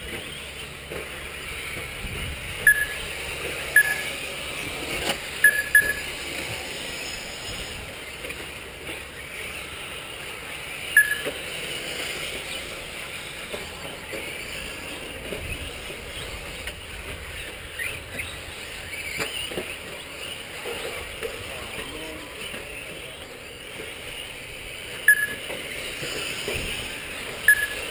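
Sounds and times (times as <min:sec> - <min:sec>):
radio-controlled trucks running: 0:00.0 - 0:27.9
short high beeps: 0:02.6 - 0:03.0, 0:03.7 - 0:04.1, 0:05.4 - 0:06.1, 0:11.0 - 0:11.3, 0:25.1 - 0:25.4, 0:27.5 - 0:27.9.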